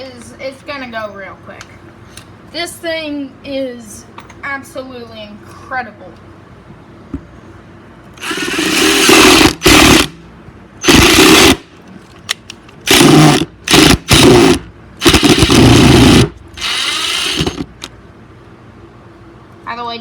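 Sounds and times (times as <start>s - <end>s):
impact driver hammering: 8.2s - 10.2s, 10.8s - 11.6s, 12.9s - 17.9s.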